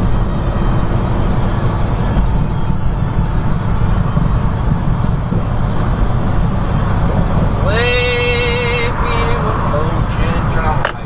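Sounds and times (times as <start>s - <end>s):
truck engine and tyre hum: 0.0s - 11.0s.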